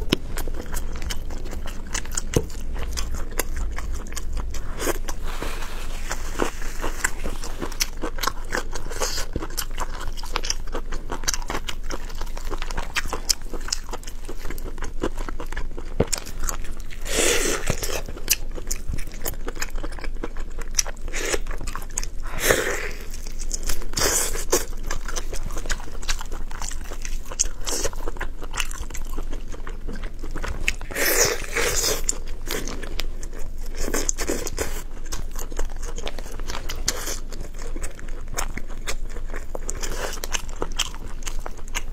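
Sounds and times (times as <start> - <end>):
close-miked chewing and mouth smacks: 0.0 - 5.2, 6.0 - 41.9.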